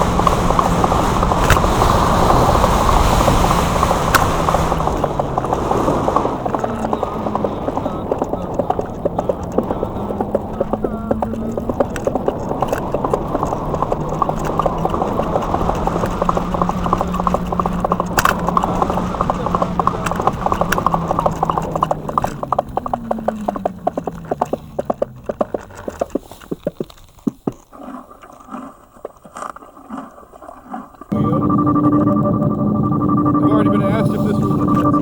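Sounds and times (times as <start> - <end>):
synthetic engine sound ticking pulse: 31.1 - 35.0.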